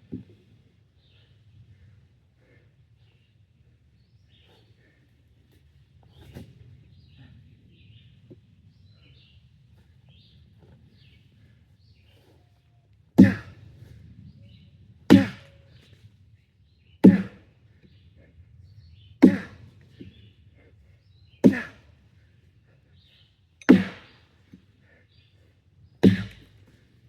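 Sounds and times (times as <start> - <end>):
axe chopping wood: 13.2 - 13.6, 15.1 - 15.5, 17.0 - 17.4, 19.2 - 19.6, 21.4 - 21.8, 23.6 - 24.2, 26.0 - 26.5.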